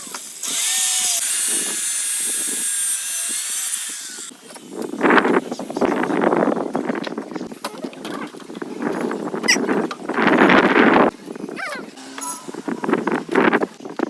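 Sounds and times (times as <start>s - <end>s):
high-pitched power tool: 0.0s - 4.3s.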